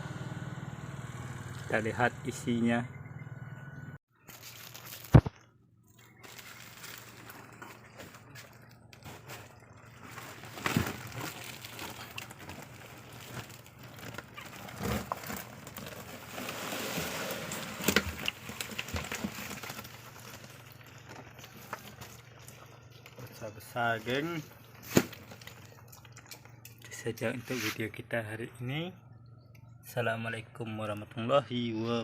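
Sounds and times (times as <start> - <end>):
bag rustling and crackling: 4.2 - 23.4.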